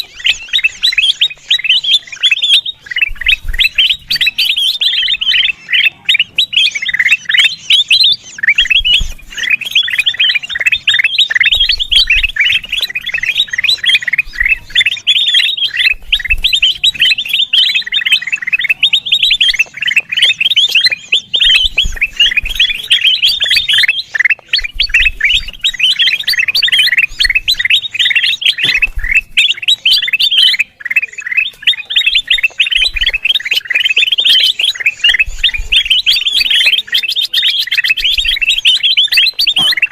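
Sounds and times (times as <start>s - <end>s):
bulbul rapid chirping: 0.0s - 39.9s.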